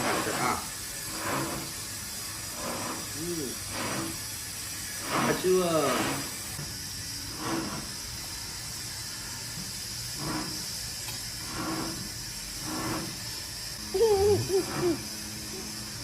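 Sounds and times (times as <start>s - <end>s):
steady hiss: 0.0s - 16.0s
short high voice: 13.9s - 15.0s.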